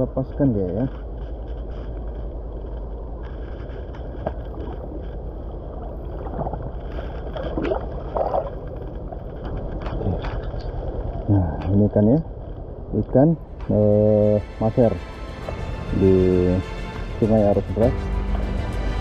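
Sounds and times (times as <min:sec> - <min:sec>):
water splashing and gurgling: 0:02.4 - 0:11.2.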